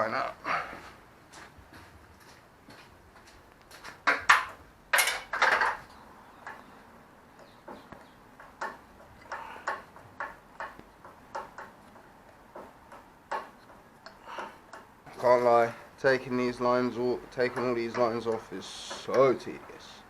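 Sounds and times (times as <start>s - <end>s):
metal tools clicking and scraping: 4.0s - 6.7s, 17.3s - 20.0s.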